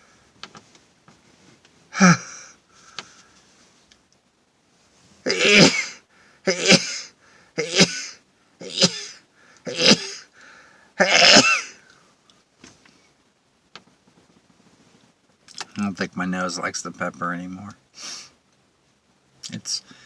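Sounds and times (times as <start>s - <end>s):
man sneezing: 1.9s - 2.5s, 5.3s - 10.3s, 11.0s - 11.8s.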